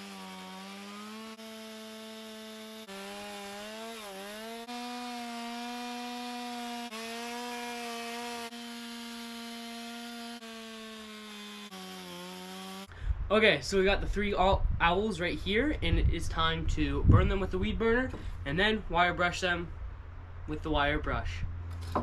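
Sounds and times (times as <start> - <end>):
chainsaw cutting wood: 0.0 - 12.9.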